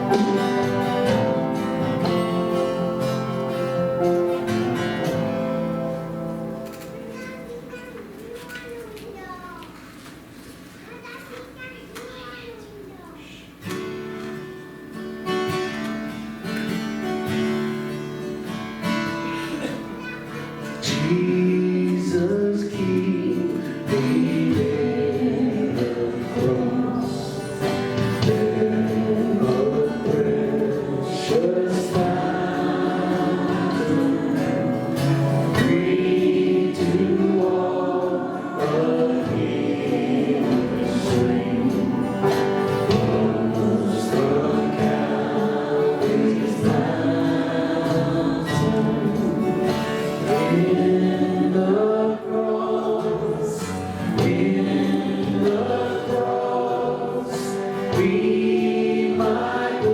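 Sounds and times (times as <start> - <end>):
group singing worship song: 0.0 - 7.0, 20.6 - 59.9
instrumental accompaniment: 0.0 - 8.4, 23.3 - 59.9.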